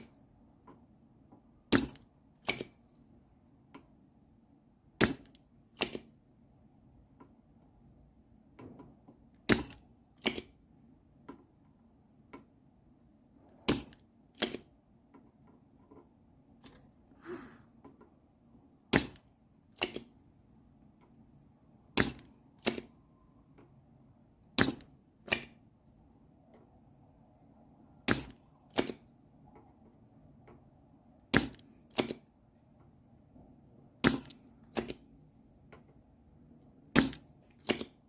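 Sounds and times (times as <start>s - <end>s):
solder sucker snapping: 19.8s - 20.1s, 37.0s - 38.0s.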